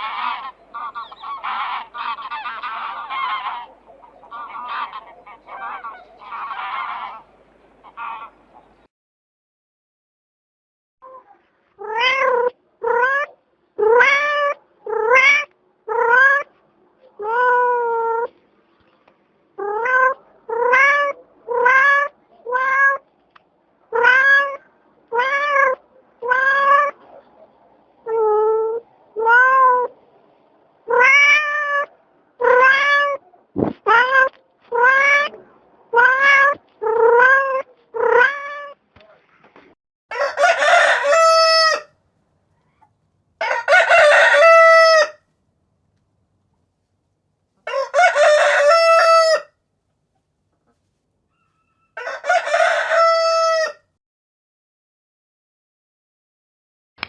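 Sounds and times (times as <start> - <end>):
cat meowing: 11.8 - 16.5, 17.2 - 18.3, 19.6 - 23.0, 23.9 - 27.0, 28.1 - 29.9, 30.9 - 33.2, 33.9 - 38.8.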